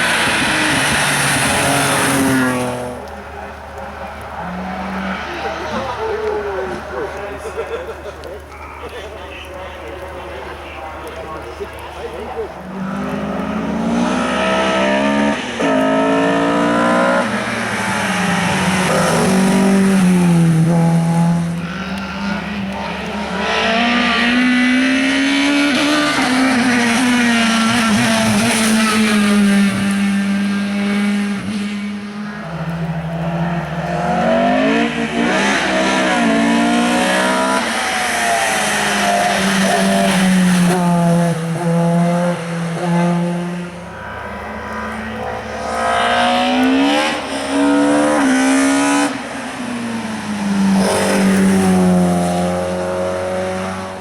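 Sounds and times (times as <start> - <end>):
race car engine accelerating: 11.0 - 54.0.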